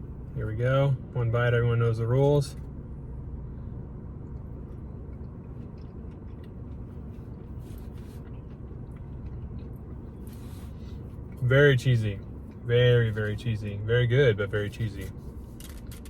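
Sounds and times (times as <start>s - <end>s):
steady low hum: 0.0s - 16.0s
person chewing: 4.3s - 11.4s.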